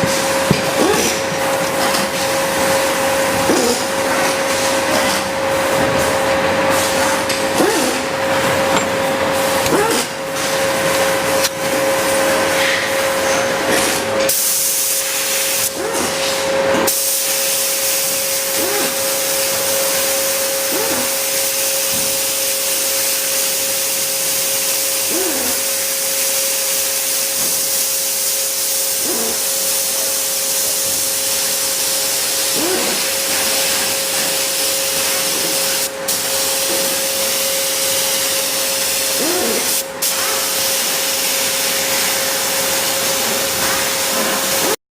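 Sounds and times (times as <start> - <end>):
paint spray gun hissing: 14.3 - 15.8, 16.9 - 19.6, 21.0 - 44.7.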